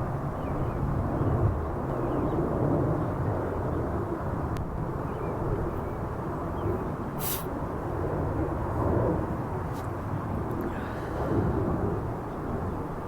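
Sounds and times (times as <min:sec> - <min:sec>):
hissing sniff: 0:07.2 - 0:07.5.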